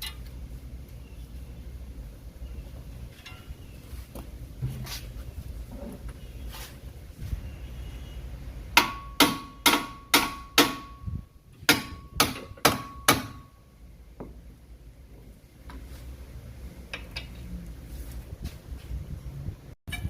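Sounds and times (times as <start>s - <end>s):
hammer striking steel: 8.8s - 11.1s, 11.7s - 13.6s.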